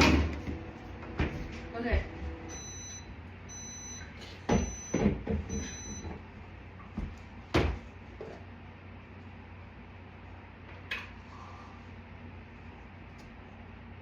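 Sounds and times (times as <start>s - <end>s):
microwave oven beeping: 2.2s - 6.4s
handling knocks and thumps: 6.9s - 8.4s.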